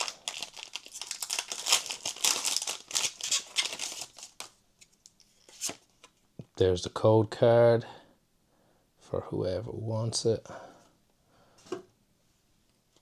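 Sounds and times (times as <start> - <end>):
foil wrapper crinkling and tearing: 0.0 - 4.6.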